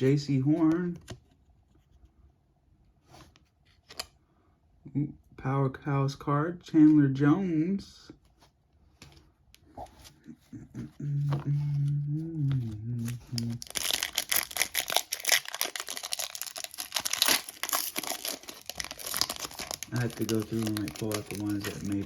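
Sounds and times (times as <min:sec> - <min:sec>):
person humming: 0:10.5 - 0:13.7
plastic wrapper crinkling and tearing: 0:12.4 - 0:22.0.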